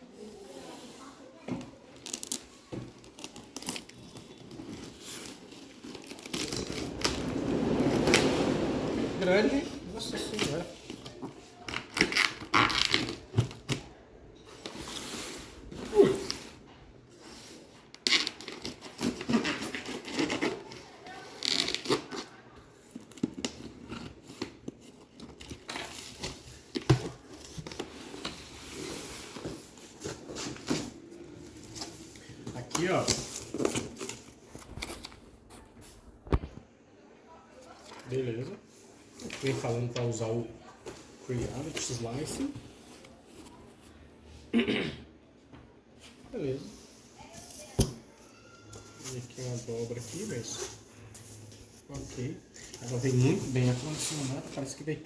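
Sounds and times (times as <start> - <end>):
packaging rustling and knocking: 1.6 - 16.6, 18.0 - 36.7
packaging crinkling and tearing: 2.0 - 8.6, 18.0 - 36.6.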